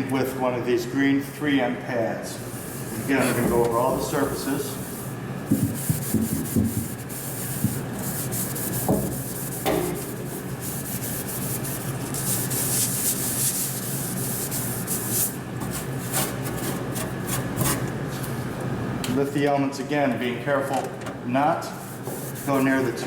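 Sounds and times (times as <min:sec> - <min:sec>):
scouring pad scrubbing metal: 0:21.8 - 0:23.0.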